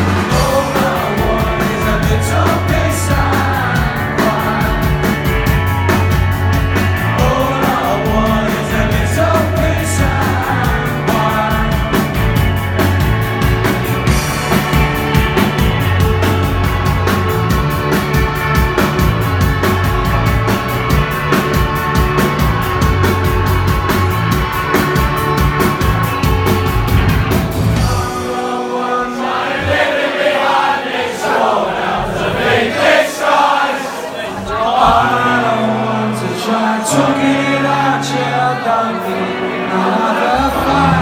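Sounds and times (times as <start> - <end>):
audience singing together: 0.0 - 23.2, 23.8 - 41.0
live rock band playing: 0.0 - 28.8.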